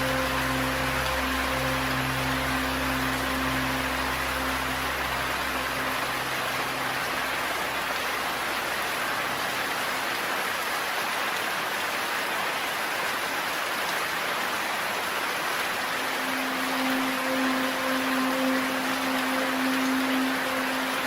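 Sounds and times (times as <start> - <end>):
low background music: 0.0 - 9.8, 16.0 - 21.0
heavy rain hiss: 0.0 - 21.0.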